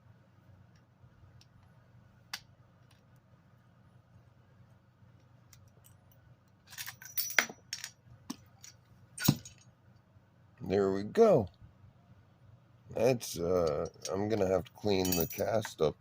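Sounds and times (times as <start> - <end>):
metal tool clinks and scrapes: 5.7 - 9.6, 13.6 - 15.9.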